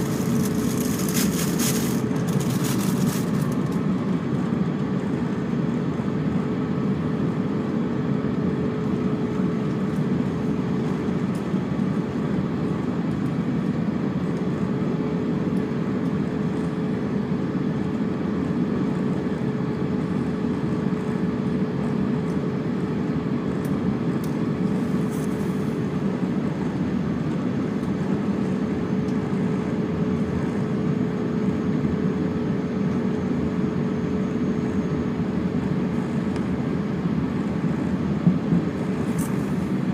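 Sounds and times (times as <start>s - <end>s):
aircraft cabin hum: 0.0s - 6.6s, 18.8s - 39.9s.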